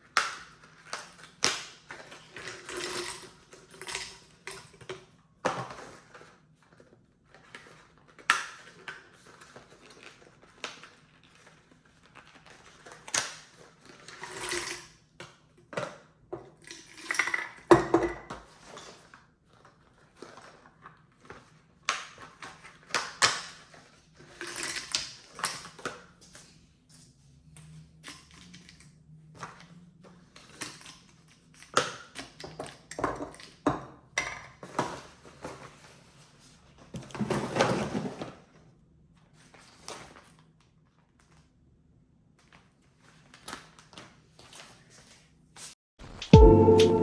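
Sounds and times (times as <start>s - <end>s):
packaging rustling: 5.7s - 14.2s.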